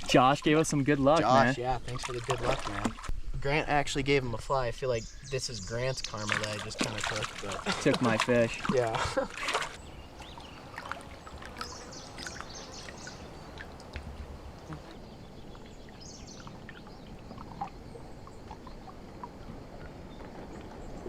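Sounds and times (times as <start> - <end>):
lake water lapping: 0.0 - 3.1, 5.3 - 21.0
water drips and splashes: 0.0 - 3.1, 5.7 - 21.0.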